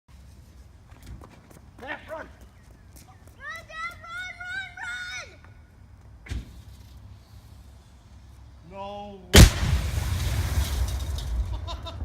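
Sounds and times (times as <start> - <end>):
loud explosion bang: 9.4 - 12.0
rumbling noise: 9.4 - 12.0.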